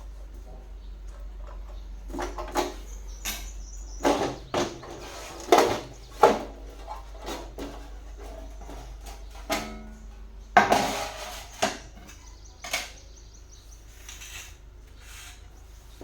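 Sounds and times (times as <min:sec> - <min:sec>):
hard objects knocking and clattering: 0:03.4 - 0:13.0.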